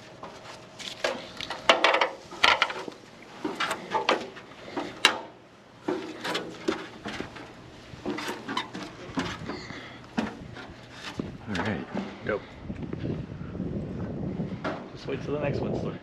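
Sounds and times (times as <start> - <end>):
tools knocking and clanking: 1.7 - 12.2.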